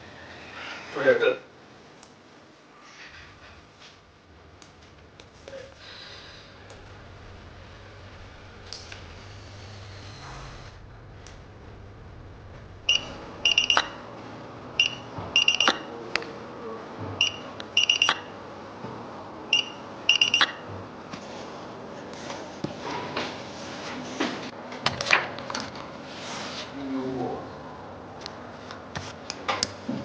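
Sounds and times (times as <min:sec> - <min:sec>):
electronic beeps: 0:12.8 - 0:14.1, 0:14.8 - 0:15.9, 0:17.2 - 0:18.4, 0:19.5 - 0:20.6.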